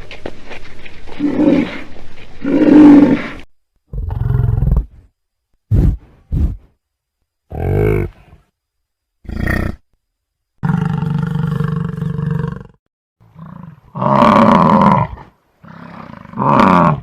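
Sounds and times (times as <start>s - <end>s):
animal grunting calls: 7.5s - 8.4s
large animal roaring: 10.6s - 17.0s.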